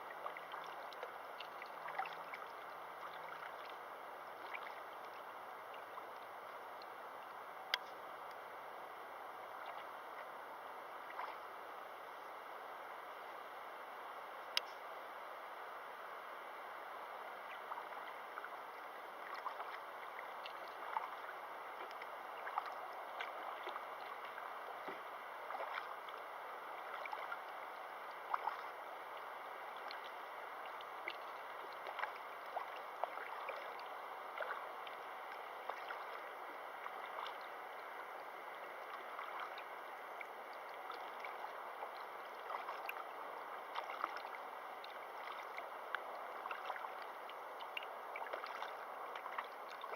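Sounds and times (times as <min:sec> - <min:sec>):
river water babbling over rocks: 0:15.5 - 0:49.9.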